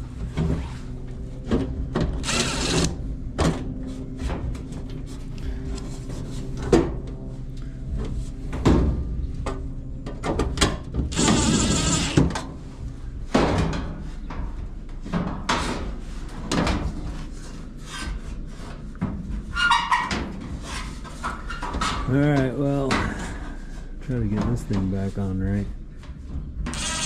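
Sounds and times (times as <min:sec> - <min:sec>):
metal scraping: 0:11.1 - 0:12.2.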